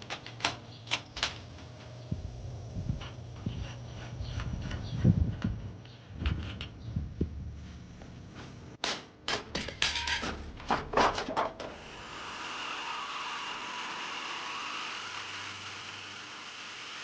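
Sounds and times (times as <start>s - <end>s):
metal clanks and rattles: 9.3s - 11.7s.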